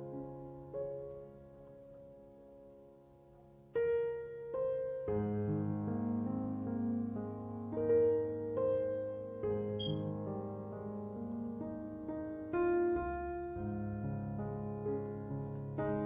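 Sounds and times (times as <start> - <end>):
piano chords: 0.0 - 16.0
low piano bass notes: 5.6 - 16.0.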